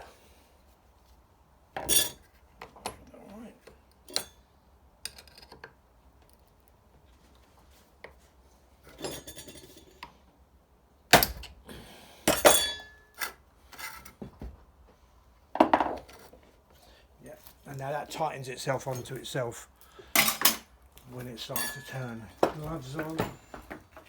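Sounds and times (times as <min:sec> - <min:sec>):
quiet fiddling: 0:20.9 - 0:24.0.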